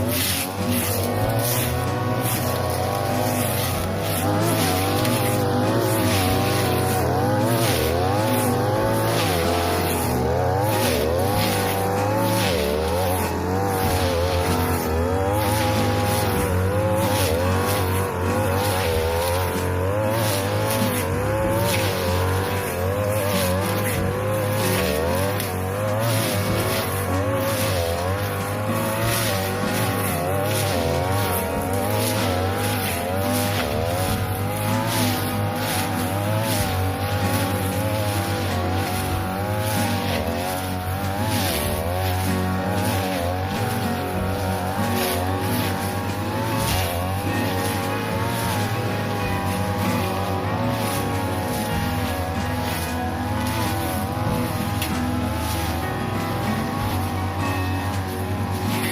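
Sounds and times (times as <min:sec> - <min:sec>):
brush cutter engine running: 0:00.0 - 0:58.9.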